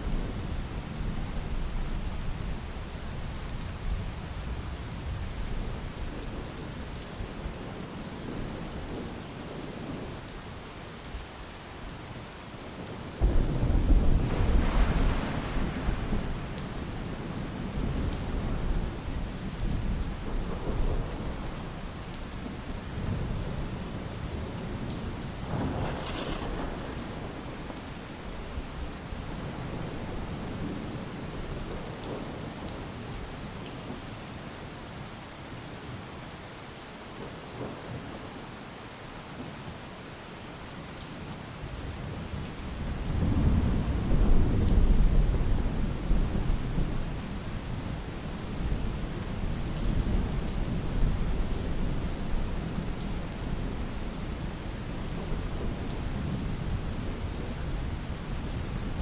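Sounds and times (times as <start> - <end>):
steady rain: 0.0 - 59.0
thunder rumbling: 13.2 - 23.7, 25.4 - 30.9.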